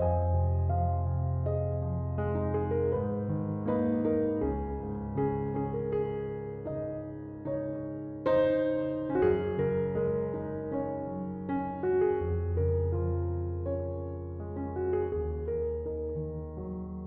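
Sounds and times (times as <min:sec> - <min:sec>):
gentle piano music: 0:00.0 - 0:17.0.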